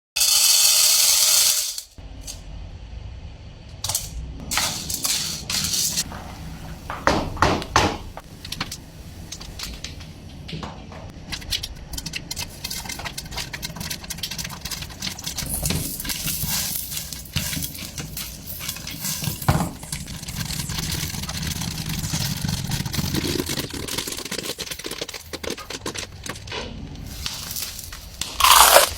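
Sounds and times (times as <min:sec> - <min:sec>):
steady low hum: 0:02.0 - 0:24.1
popcorn popping: 0:03.8 - 0:26.5, 0:27.1 - 0:28.9.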